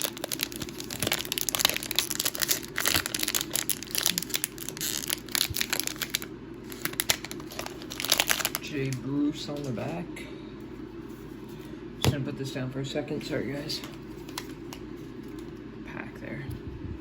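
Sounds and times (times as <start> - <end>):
card pack wrapper crinkling and tearing: 0.0 - 9.8, 13.8 - 15.5.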